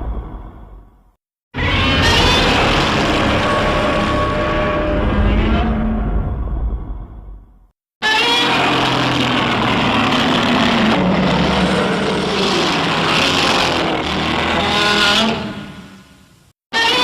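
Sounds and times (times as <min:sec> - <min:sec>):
monster roar: 0:01.6 - 0:05.8, 0:08.2 - 0:15.9.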